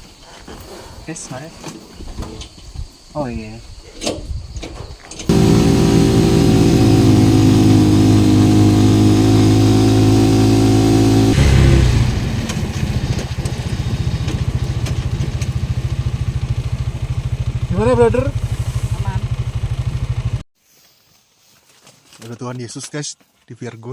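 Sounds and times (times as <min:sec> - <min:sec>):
motorcycle engine running: 0:05.3 - 0:20.5.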